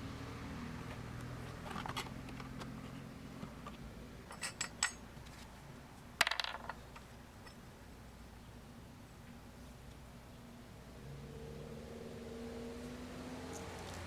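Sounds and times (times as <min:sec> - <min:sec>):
metal clips clinking: 0:04.3 - 0:05.0.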